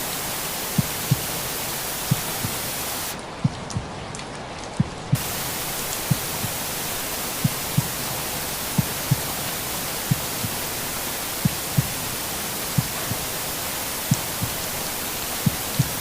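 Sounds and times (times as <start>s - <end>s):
rain hiss: 0.0s - 16.0s
slow heartbeat: 0.7s - 1.4s, 2.1s - 2.7s, 3.4s - 4.1s, 4.8s - 5.4s, 6.0s - 6.6s, 7.4s - 8.1s, 8.8s - 10.6s, 11.4s - 12.1s, 12.7s - 13.4s, 14.1s - 14.7s, 15.4s - 16.0s.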